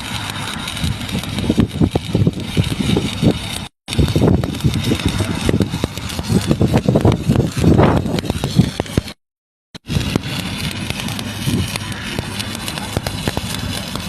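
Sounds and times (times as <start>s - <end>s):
welding arc crackling: 0.0s - 9.2s, 9.8s - 14.0s.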